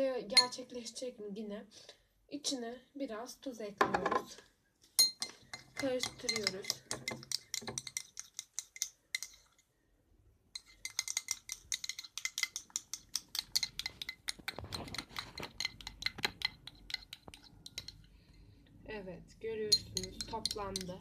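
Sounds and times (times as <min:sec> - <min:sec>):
teaspoon clinking against container: 0:05.0 - 0:09.6, 0:10.6 - 0:18.1, 0:19.7 - 0:21.0.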